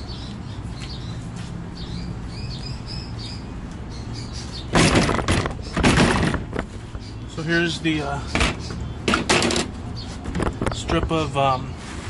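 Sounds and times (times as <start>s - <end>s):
small birds chirping: 0.0s - 11.8s
plywood scraping and rattling: 4.7s - 6.9s, 8.3s - 9.7s.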